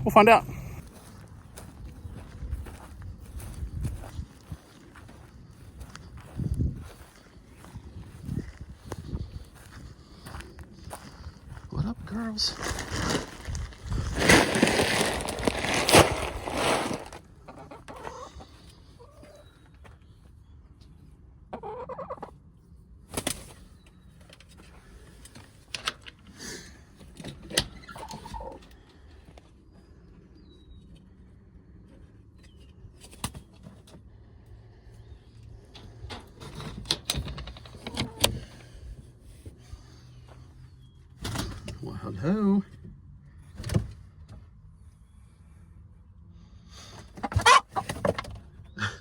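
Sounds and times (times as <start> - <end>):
hens clucking: 17.2 - 19.5, 21.4 - 22.4, 27.8 - 28.8, 37.7 - 38.3, 47.0 - 48.2.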